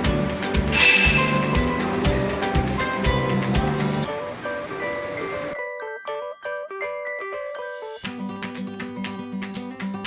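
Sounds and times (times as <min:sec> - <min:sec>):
drum beat: 0:00.0 - 0:04.3
melody of short notes: 0:00.0 - 0:08.1.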